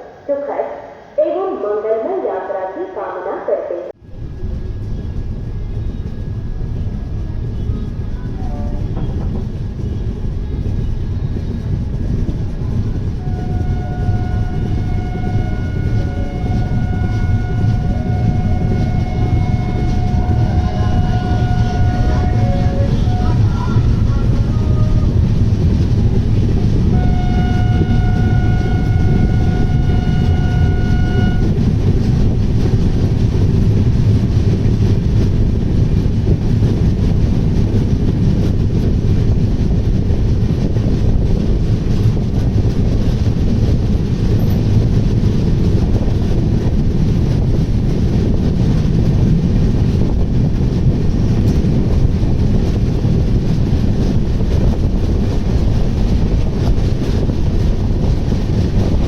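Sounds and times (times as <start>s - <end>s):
train wheels rumbling on track: 4.0s - 59.0s
train horn blast: 13.1s - 25.4s, 26.6s - 32.9s.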